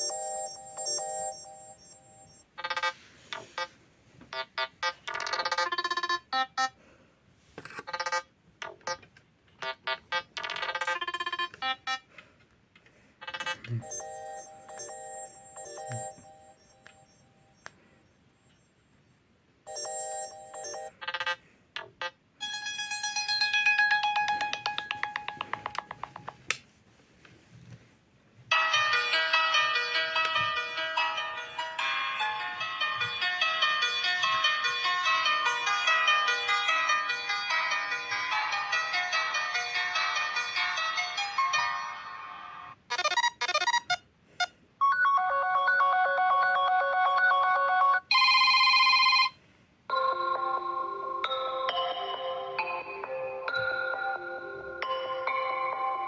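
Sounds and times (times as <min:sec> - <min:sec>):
buzzy chime: 0:00.0 - 0:02.4, 0:13.7 - 0:17.7
phone ringtone repeated notes: 0:00.0 - 0:03.7, 0:04.4 - 0:06.8, 0:09.9 - 0:12.1, 0:13.2 - 0:17.6, 0:19.7 - 0:21.4, 0:22.0 - 0:26.2, 0:42.9 - 0:56.0
ringtone bright chimes: 0:00.0 - 0:03.7, 0:13.3 - 0:17.7, 0:19.7 - 0:21.4, 0:22.4 - 0:26.2, 0:49.9 - 0:56.0.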